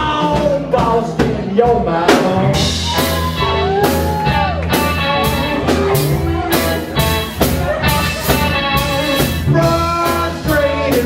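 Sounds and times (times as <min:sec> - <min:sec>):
live rock band playing: 0:00.0 - 0:11.0
electric guitar: 0:02.4 - 0:11.0.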